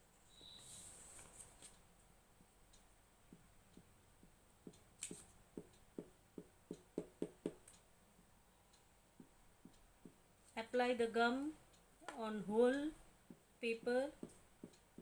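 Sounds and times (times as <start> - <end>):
paper rustling: 0.6 - 1.8
light taps on paper: 14.2 - 15.0.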